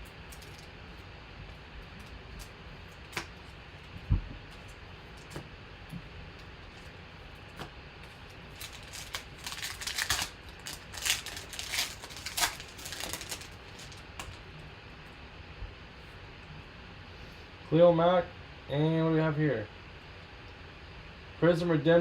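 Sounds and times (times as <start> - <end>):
trading cards rustling and snapping: 0.3 - 0.7, 1.9 - 3.6, 7.5 - 14.5.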